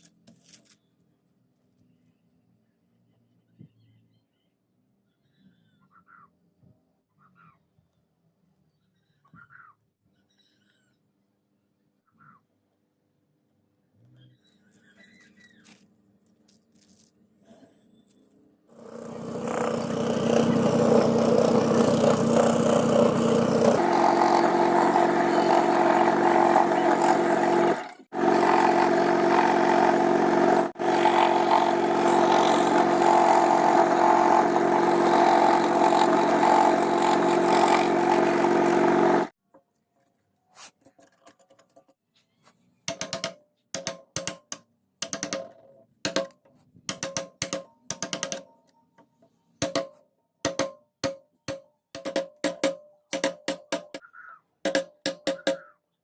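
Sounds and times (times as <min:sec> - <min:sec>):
scroll saw cutting wood: 0:18.7 - 0:39.4.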